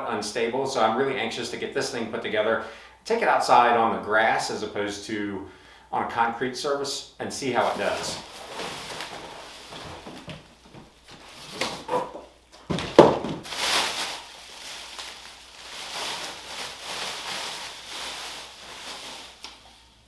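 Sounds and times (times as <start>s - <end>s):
cardboard scraping and rustling: 7.6s - 15.2s.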